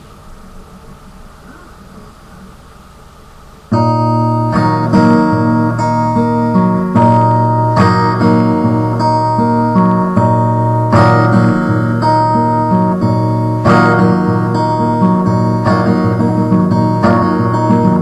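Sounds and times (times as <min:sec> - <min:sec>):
acoustic guitar strumming chords: 0:03.7 - 0:18.0.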